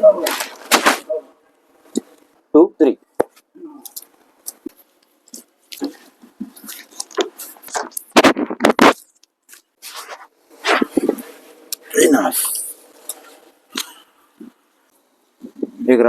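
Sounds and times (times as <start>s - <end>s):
loud scrapes: 0.2s - 1.1s, 9.8s - 11.6s.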